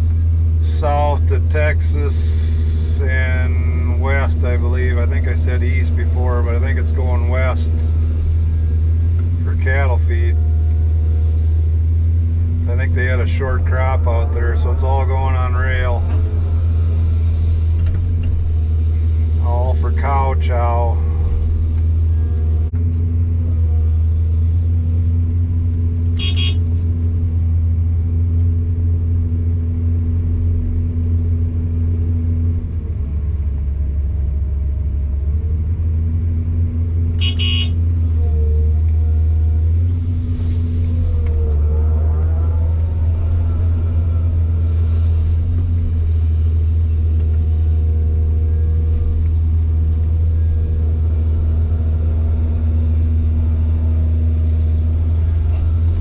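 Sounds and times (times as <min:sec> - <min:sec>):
diesel engine droning: 0:00.0 - 0:56.0
short high chirps: 0:26.2 - 0:26.6.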